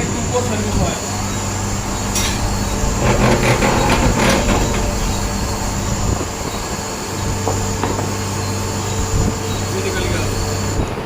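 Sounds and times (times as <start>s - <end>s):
wire stripping machine humming: 0.0s - 11.0s
rattling and clattering: 1.0s - 8.2s.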